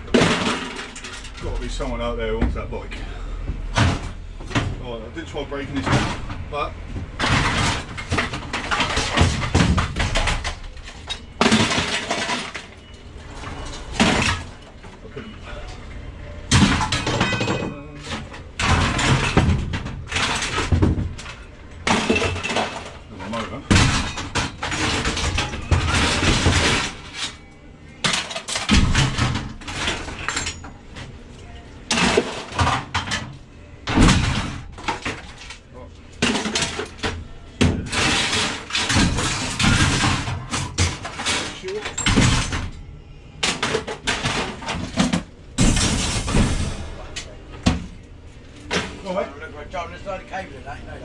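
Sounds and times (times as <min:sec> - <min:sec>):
scrap metal crashing onto pile: 0:00.0 - 0:02.0, 0:05.6 - 0:14.6, 0:16.5 - 0:27.4, 0:31.9 - 0:33.3, 0:36.2 - 0:42.7, 0:43.4 - 0:47.2
scrap metal clattering: 0:00.0 - 0:04.8, 0:05.5 - 0:15.8.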